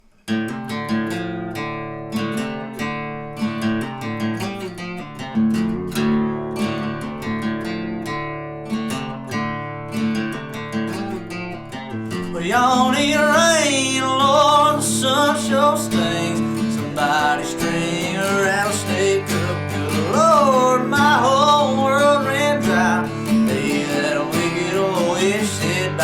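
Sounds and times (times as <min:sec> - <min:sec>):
acoustic guitar strumming: 0:00.0 - 0:26.0
person singing: 0:12.2 - 0:26.0.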